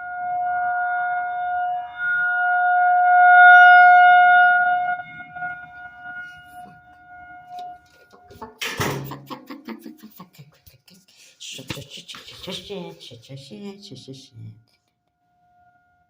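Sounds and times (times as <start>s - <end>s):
rotating tornado siren: 0.0s - 9.7s.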